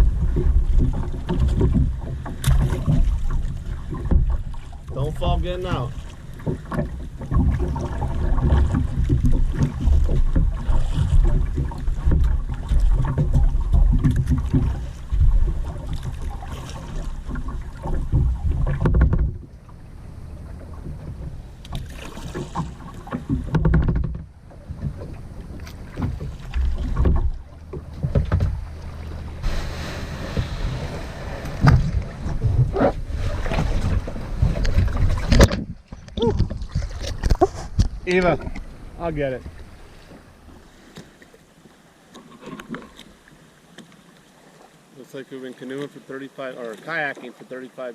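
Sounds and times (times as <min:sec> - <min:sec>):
wind buffeting microphone: 0:00.0 - 0:40.0
knocks and rustles: 0:17.3 - 0:19.5, 0:21.0 - 0:28.7.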